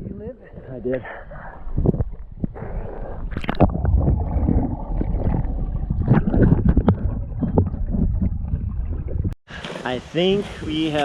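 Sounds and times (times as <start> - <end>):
low rumble on microphone: 0.0 - 9.4
water splashing and sloshing: 3.0 - 11.0.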